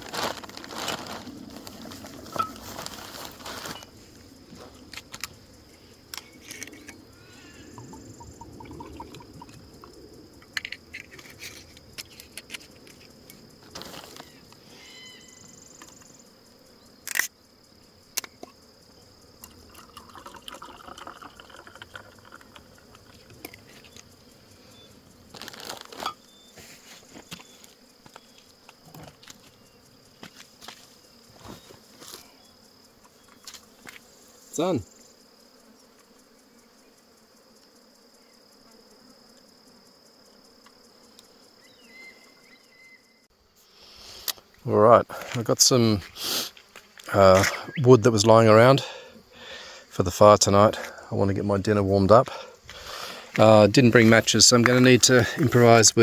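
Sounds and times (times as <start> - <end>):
camp gear clicks and knocks: 0.0 - 5.4, 6.1 - 7.0, 10.4 - 14.6, 17.0 - 17.3, 25.3 - 26.2, 27.1 - 29.6
insect drone: 0.0 - 56.0.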